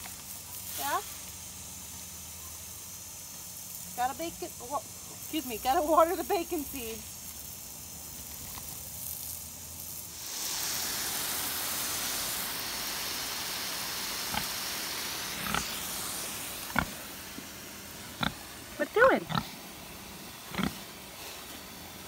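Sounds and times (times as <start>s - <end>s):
garden hose spraying water: 0.0s - 22.0s
pig calls: 15.4s - 15.7s, 16.7s - 17.0s, 20.5s - 20.9s.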